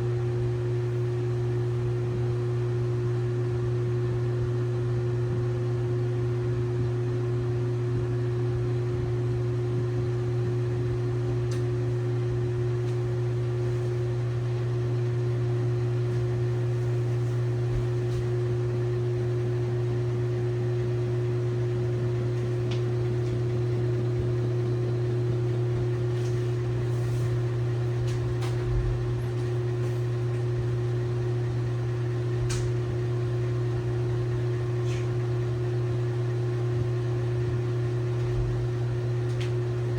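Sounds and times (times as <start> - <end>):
washing machine humming: 0.0 - 39.9.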